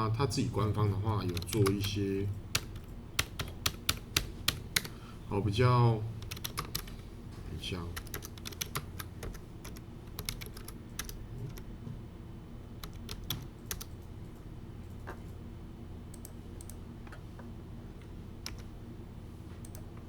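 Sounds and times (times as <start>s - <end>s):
low steady hum: 0.0s - 20.0s
typing on computer keyboard: 1.2s - 4.9s, 6.2s - 6.9s, 8.0s - 11.6s, 12.8s - 14.0s, 18.4s - 18.7s.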